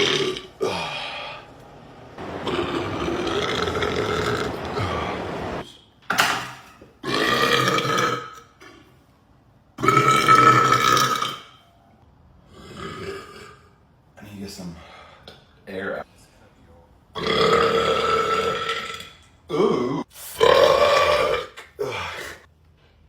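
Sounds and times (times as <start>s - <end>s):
man burping: 0.0s - 1.3s, 17.2s - 22.2s.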